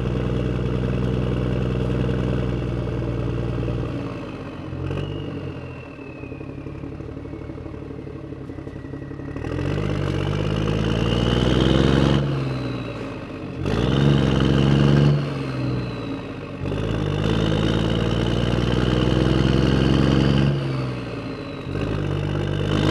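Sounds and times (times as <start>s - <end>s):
engine revving: 9.2s - 22.9s.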